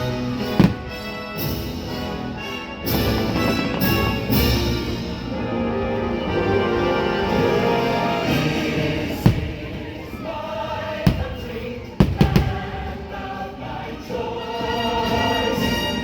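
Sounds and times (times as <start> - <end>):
firework shells bursting: 0.3 - 2.1, 9.1 - 9.9, 11.1 - 12.7
choir singing over orchestra: 2.9 - 16.0.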